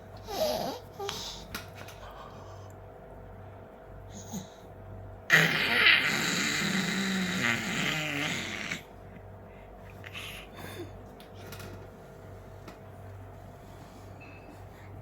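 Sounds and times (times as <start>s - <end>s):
baby making raspy vocal sound: 5.3s - 8.9s.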